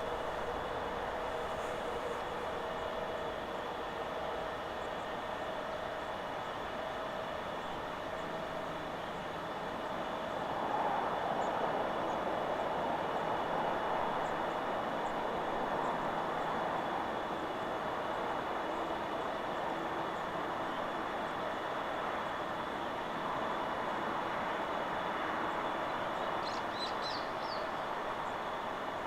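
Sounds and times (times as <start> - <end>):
wind through trees: 0.0 - 29.0
faint high bird chirps: 26.3 - 27.8.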